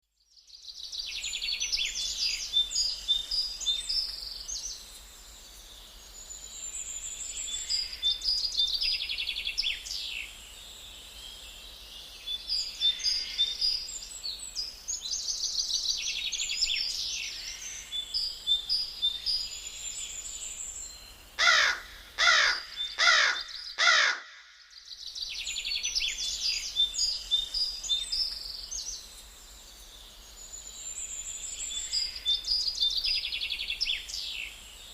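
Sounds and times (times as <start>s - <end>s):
small birds chirping and trilling: 0.0s - 34.9s
crow cawing: 21.4s - 24.6s.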